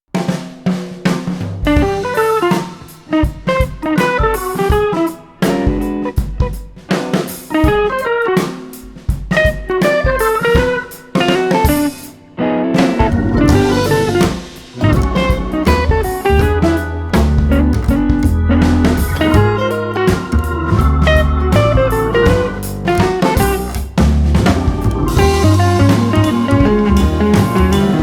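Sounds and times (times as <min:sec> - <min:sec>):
drum kit beat: 0:00.1 - 0:12.2, 0:12.8 - 0:28.0
plucked guitar melody: 0:12.4 - 0:28.0.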